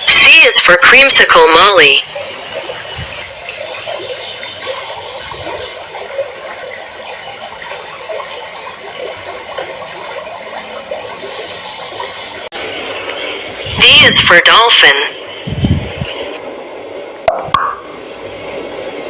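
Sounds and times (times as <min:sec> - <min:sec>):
water bubbling and trickling: 0:00.0 - 0:12.6.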